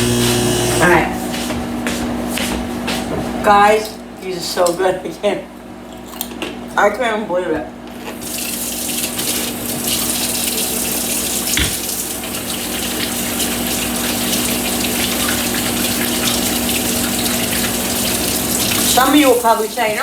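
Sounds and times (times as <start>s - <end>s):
water running from a tap: 0.0s - 0.9s, 8.1s - 20.0s.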